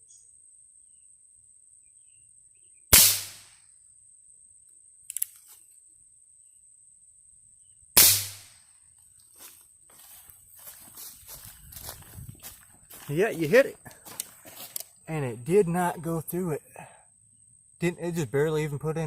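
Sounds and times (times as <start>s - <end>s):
gunshots: 2.9s - 3.6s, 8.0s - 8.6s.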